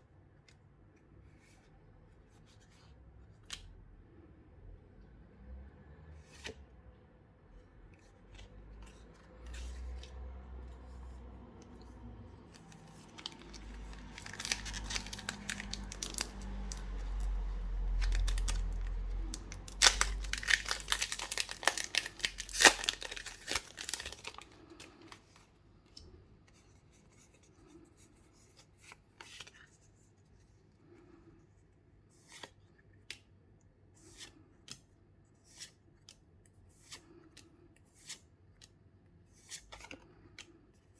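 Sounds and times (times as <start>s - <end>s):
plastic crinkling: 12.6s - 25.4s
card packaging tearing: 12.7s - 25.2s.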